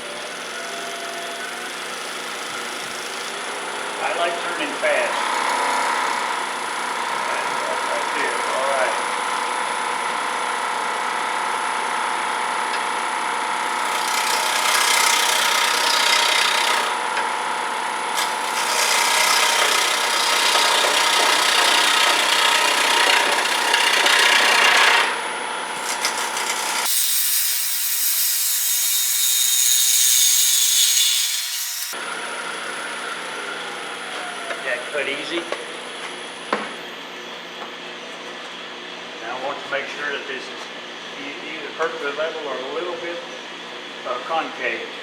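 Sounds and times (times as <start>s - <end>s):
lathe motor hum: 0.0s - 37.6s
turning tool scraping wood: 13.8s - 17.0s, 18.2s - 25.2s, 25.8s - 32.0s.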